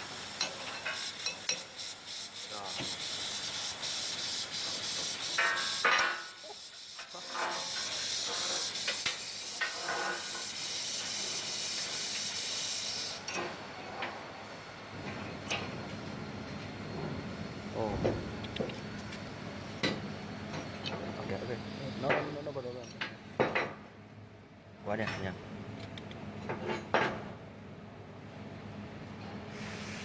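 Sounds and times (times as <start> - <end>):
plasma torch gas hissing: 0.0 - 13.3, 29.5 - 30.0.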